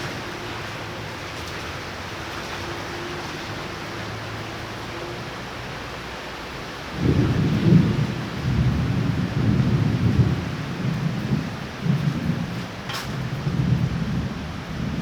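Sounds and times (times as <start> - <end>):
heavy rain: 0.0 - 15.0
rolling thunder: 6.9 - 15.0.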